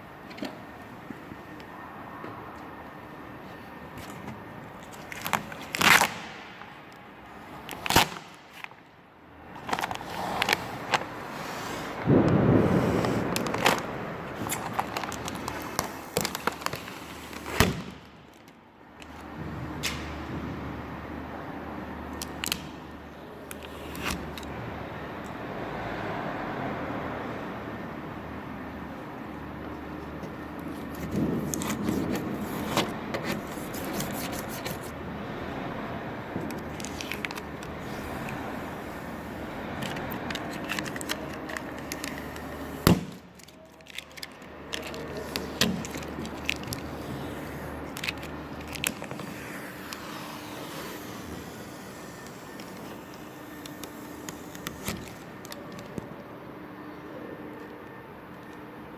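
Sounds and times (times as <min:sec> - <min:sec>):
sticker scraping and peeling: 0:03.6 - 0:08.8, 0:09.5 - 0:20.0, 0:22.1 - 0:24.6, 0:30.2 - 0:35.0, 0:36.4 - 0:56.1.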